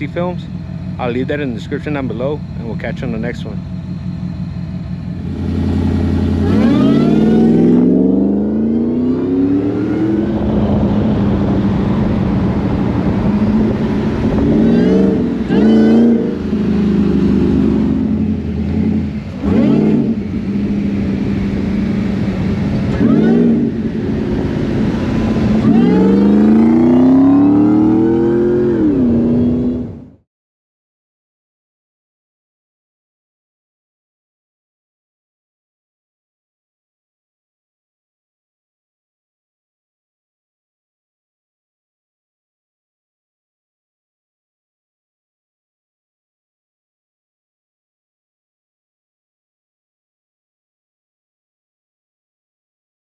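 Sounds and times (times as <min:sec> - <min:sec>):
truck engine revving: 0:00.0 - 0:30.2.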